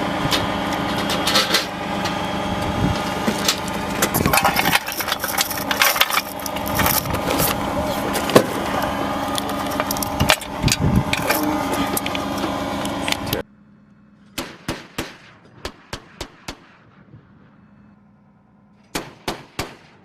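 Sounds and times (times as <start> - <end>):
vehicle engine running: 0.0 - 20.0
clanking and rattling: 0.2 - 13.4
chain gun firing bursts: 14.4 - 16.9, 18.9 - 20.0.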